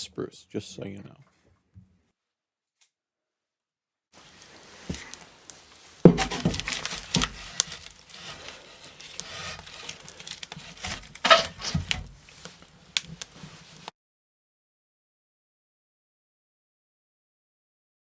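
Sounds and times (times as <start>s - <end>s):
fire crackling: 4.2s - 13.9s
rustling: 4.2s - 13.9s
wooden sticks knocking: 4.2s - 13.9s.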